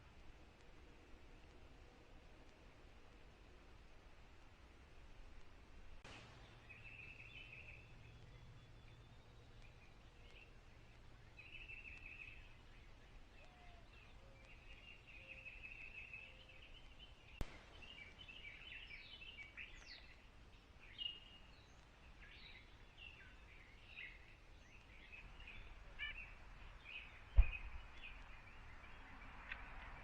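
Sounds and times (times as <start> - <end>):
birds trilling and chirping: 6.4 - 30.0.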